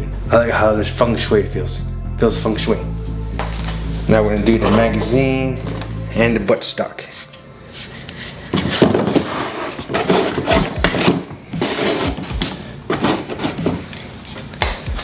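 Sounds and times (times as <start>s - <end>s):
plastic and metal parts clattering: 8.5s - 14.3s.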